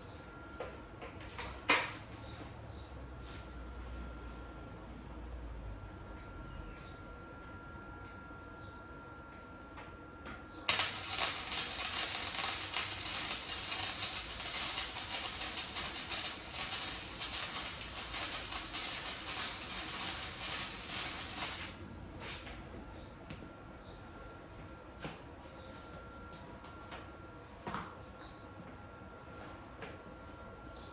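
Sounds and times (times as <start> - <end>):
welding arc crackling: 10.7 - 21.8.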